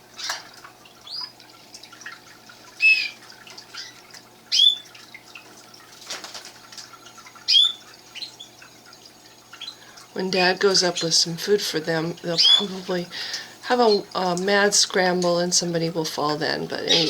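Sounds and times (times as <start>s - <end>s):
canaries chirping: 2.8s - 5.0s, 7.4s - 8.6s, 12.3s - 13.1s.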